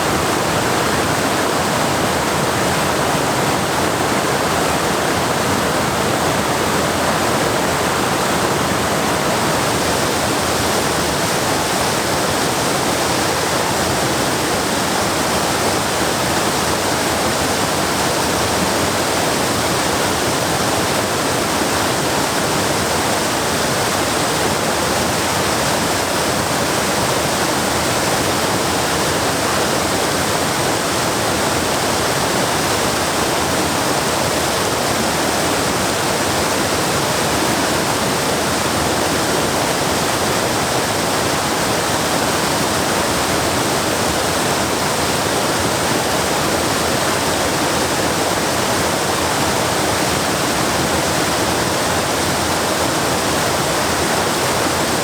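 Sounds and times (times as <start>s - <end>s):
waterfall pouring into a pool: 0.1s - 55.0s.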